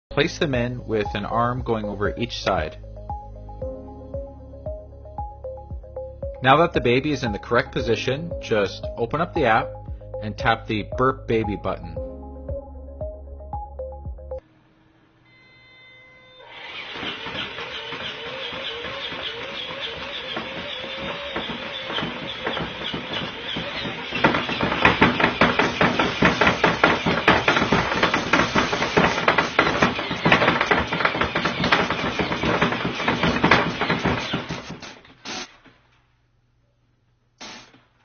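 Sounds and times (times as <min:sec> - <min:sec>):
machine motor whirring: 0:15.3 - 0:35.6
rapid mechanical knocking: 0:16.5 - 0:35.0.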